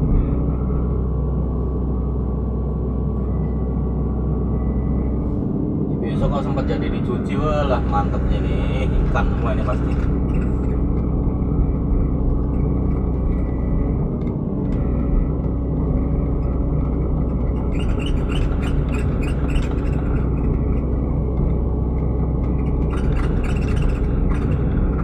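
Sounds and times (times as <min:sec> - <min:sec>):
excavator diesel engine running: 0:00.0 - 0:25.0
machine clicks and squeaks: 0:07.7 - 0:25.0.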